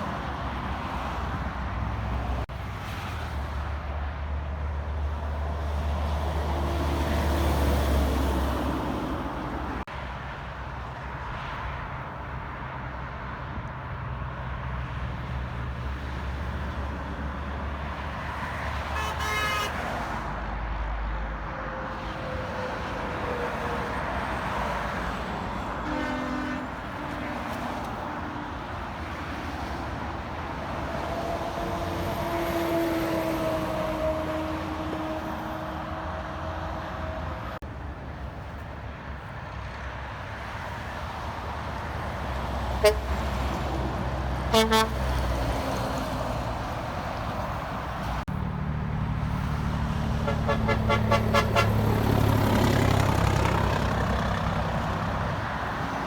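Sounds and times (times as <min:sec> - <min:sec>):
road traffic passing: 0:00.0 - 0:56.0
vehicle horn: 0:18.9 - 0:19.9, 0:25.8 - 0:27.7, 0:42.8 - 0:43.3, 0:44.5 - 0:45.2, 0:50.2 - 0:52.0
heavy vehicle engine rumbling: 0:21.4 - 0:56.0.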